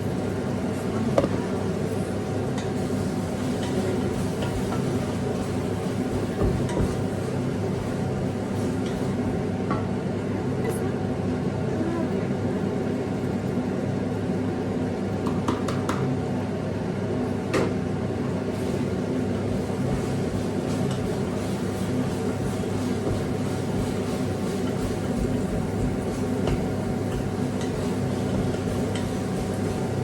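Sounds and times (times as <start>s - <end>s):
extractor fan humming: 0.0s - 15.3s.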